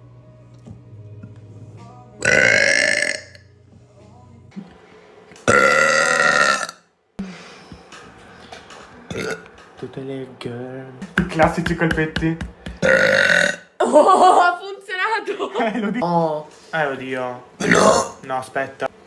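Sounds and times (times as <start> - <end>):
women burping: 2.2 - 3.4, 5.5 - 6.8, 9.1 - 9.4, 12.8 - 14.4, 17.6 - 18.2.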